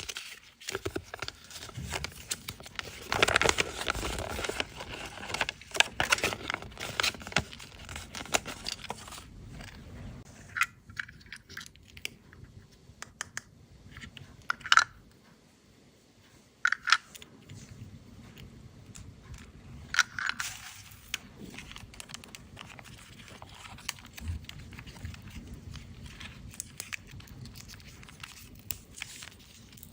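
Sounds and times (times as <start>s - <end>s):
foil wrapper crinkling and tearing: 0.0s - 9.3s, 20.4s - 29.9s.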